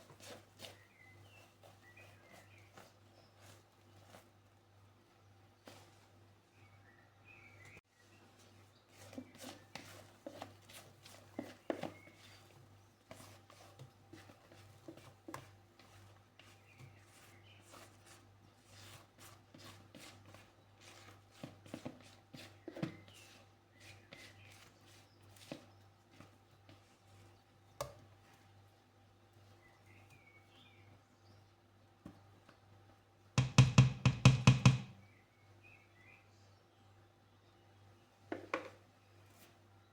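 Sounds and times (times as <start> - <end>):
utensils knocking and tapping: 33.4 - 35.0.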